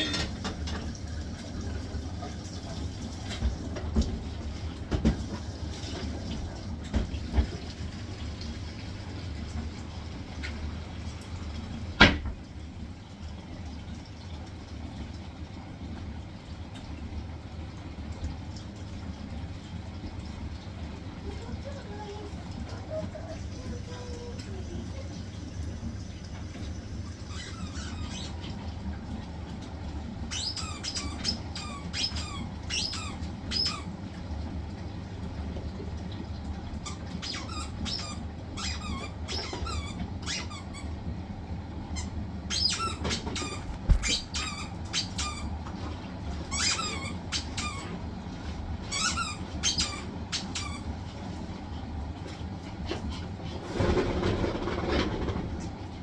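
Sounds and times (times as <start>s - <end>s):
washing machine spin cycle hum: 0.0s - 56.0s
short high squeaks: 42.5s - 45.5s.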